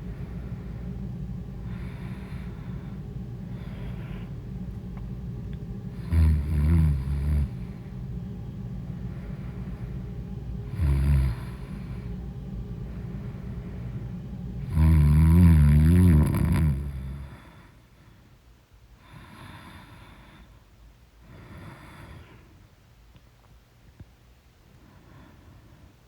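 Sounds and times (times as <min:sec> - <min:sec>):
steady low hum: 0:00.0 - 0:26.0
woman snoring loudly: 0:05.9 - 0:07.8, 0:10.6 - 0:12.1, 0:14.6 - 0:17.6.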